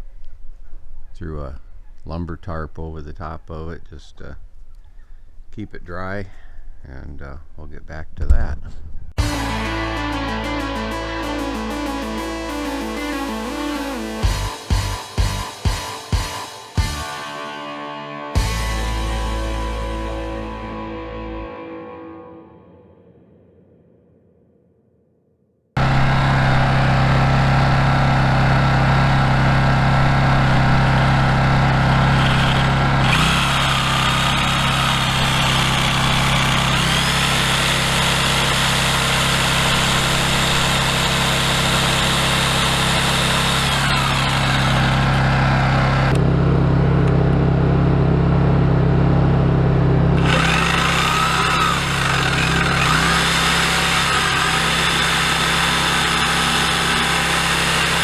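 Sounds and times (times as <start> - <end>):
power tools running: 25.8 - 47.6, 49.2 - 58.0
low engine-like hum: 45.0 - 50.2.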